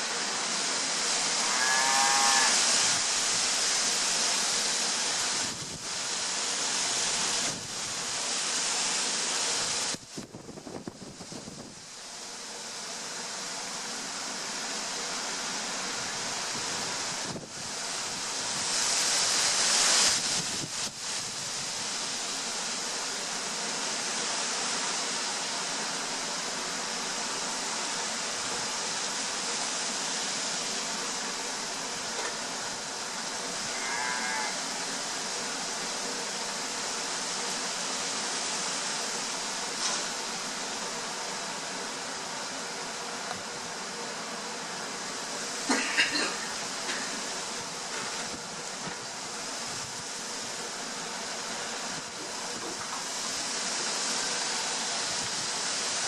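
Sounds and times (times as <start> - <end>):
faint high call: 1.4 - 2.7.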